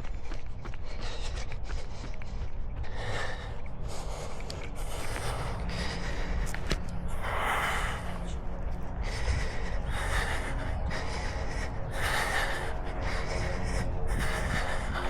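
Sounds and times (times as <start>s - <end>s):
footfalls clicking: 0.0s - 7.0s
runner breathing hard: 0.0s - 15.0s.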